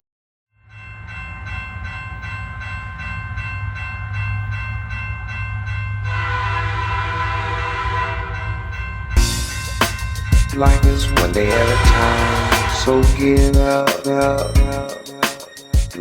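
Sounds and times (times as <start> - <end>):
sustained horn-like chord: 6.1 - 13.5
steady low rumble: 9.2 - 13.7.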